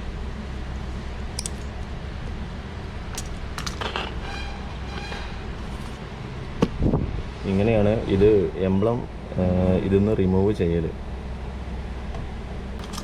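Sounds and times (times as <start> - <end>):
steady low hum: 0.0 - 13.0
plastic parts clicking: 1.4 - 1.8, 3.1 - 4.2, 12.8 - 13.0
squeaky scrape: 3.8 - 6.1.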